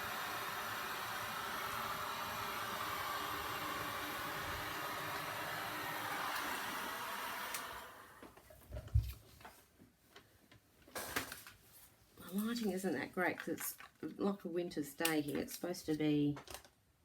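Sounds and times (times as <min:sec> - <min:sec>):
rushing hiss of blowing air: 0:00.0 - 0:08.0.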